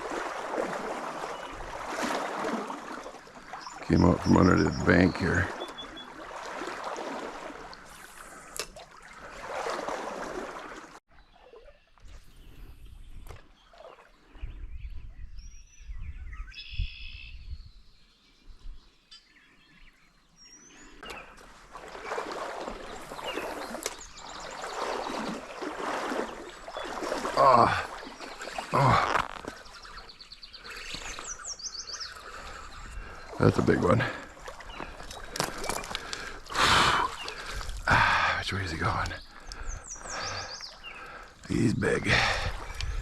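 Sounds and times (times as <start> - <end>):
stream water sloshing: 0.0 - 12.6, 13.2 - 14.4, 20.9 - 43.0
wind rumble on microphone: 14.2 - 19.0, 42.2 - 43.0.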